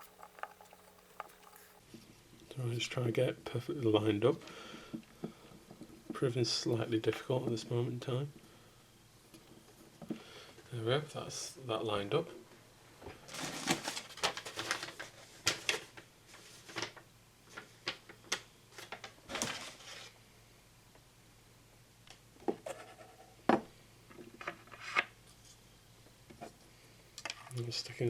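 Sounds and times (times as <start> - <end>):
small parts clicking and tapping: 0.0 - 1.8.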